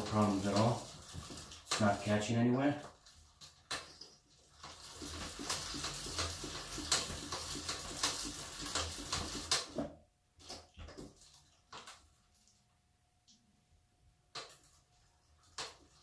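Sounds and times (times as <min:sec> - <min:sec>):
bicycle chain clicking: 0:00.0 - 0:02.2, 0:02.9 - 0:09.8.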